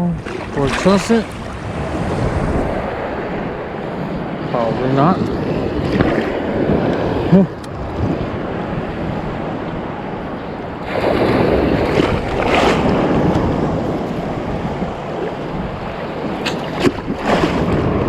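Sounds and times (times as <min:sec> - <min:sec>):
ocean surf breaking: 0:00.0 - 0:18.0
wind buffeting microphone: 0:00.0 - 0:18.0.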